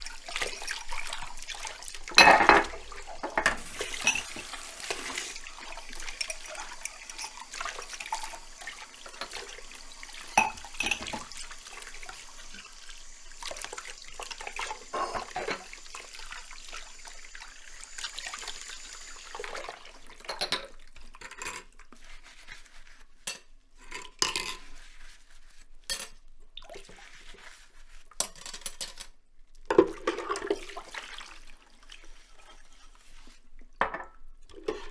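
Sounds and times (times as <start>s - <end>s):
running tap water: 0.0s - 20.6s
dishes and cutlery clinking: 2.1s - 12.0s, 14.5s - 15.9s.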